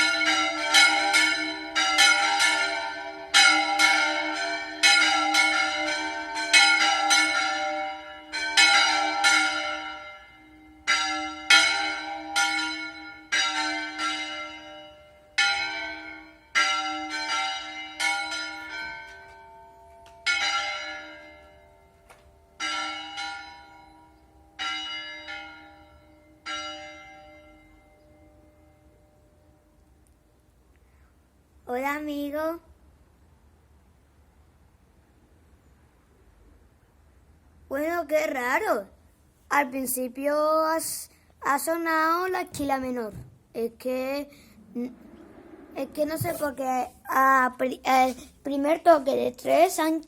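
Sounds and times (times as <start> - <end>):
church bells ringing: 0.0 - 30.0.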